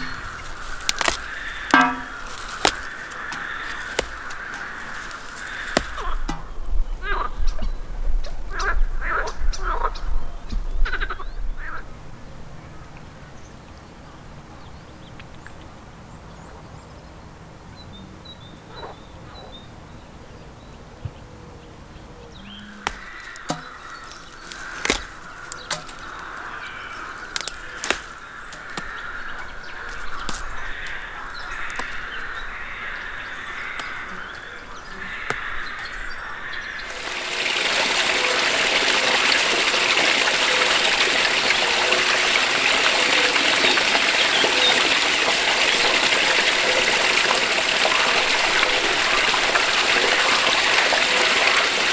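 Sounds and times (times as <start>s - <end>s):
running water rushing: 0.0s - 6.7s, 22.6s - 51.9s.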